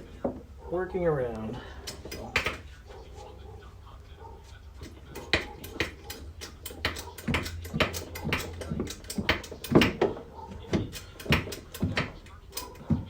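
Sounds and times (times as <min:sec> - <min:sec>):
sharp clicks and knocks: 0:01.8 - 0:02.7, 0:04.8 - 0:13.0.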